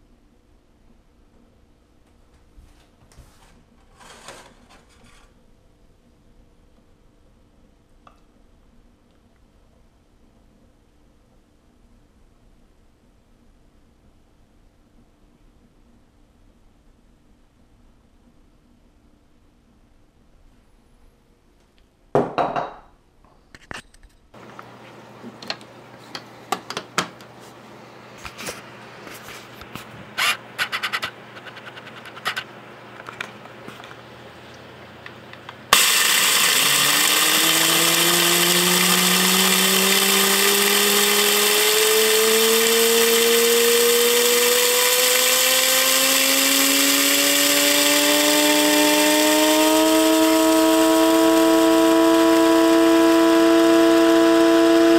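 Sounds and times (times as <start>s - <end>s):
coffee grinder motor running: 35.7s - 54.9s.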